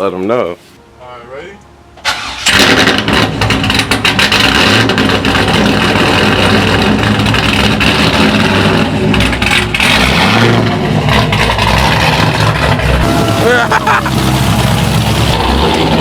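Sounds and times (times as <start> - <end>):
loud car engine choppy idle: 3.4 - 9.9, 10.6 - 16.0.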